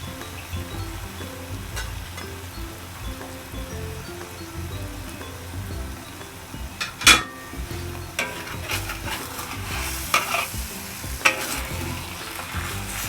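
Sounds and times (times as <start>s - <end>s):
food sizzling in a pan: 0.0s - 13.0s
utensil clinking against pan: 0.1s - 13.0s.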